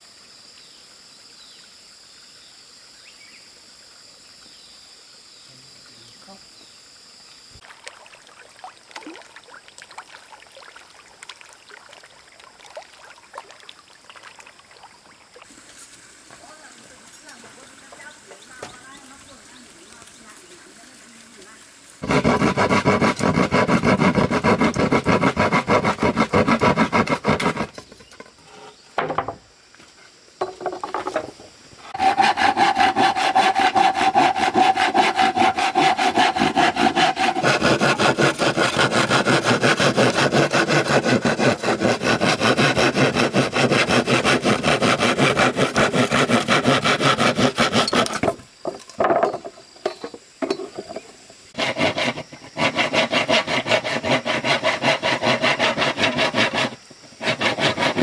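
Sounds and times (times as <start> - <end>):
saw cutting wood: 22.0 - 28.0, 31.9 - 48.4, 51.6 - 58.0.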